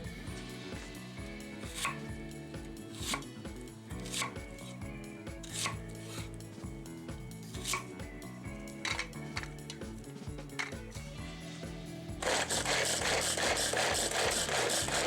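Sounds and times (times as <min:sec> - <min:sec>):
background music: 0:00.0 - 0:15.0
knife chopping on cutting board: 0:01.7 - 0:02.0.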